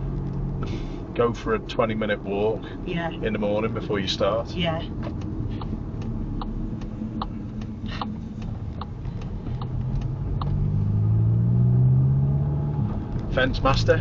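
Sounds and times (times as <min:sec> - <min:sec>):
car engine running: 0:00.0 - 0:14.0
turn signal ticking: 0:01.6 - 0:11.3.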